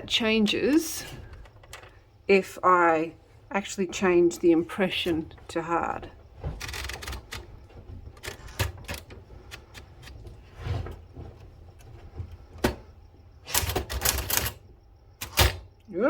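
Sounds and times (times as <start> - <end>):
typewriter clicks and clacks: 6.6 - 7.4, 13.5 - 14.6.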